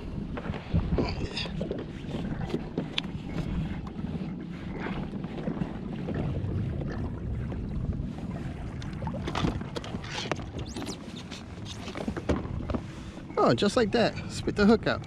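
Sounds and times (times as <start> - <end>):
water against kayak hull: 0.0 - 15.0
wind buffeting microphone: 0.0 - 15.0.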